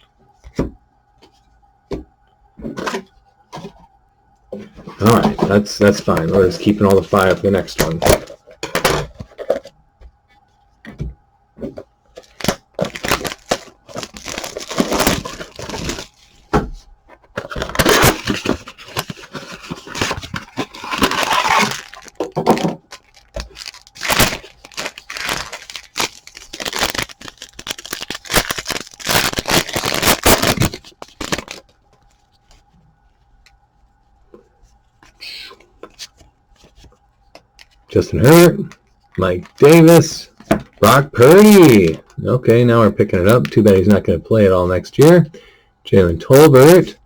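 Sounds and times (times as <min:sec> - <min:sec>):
wrappers tearing and crinkling: 0:12.2 - 0:16.2, 0:17.5 - 0:31.6.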